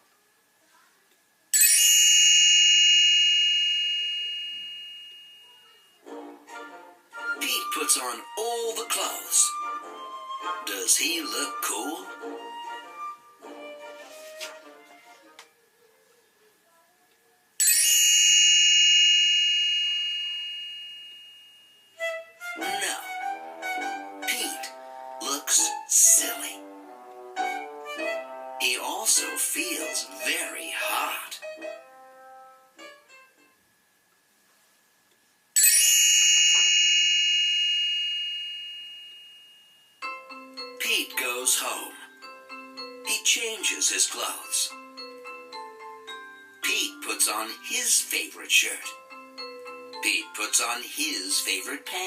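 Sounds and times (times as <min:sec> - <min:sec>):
bright chime ringing: 0:01.5 - 0:06.0, 0:17.6 - 0:23.0, 0:35.6 - 0:52.0.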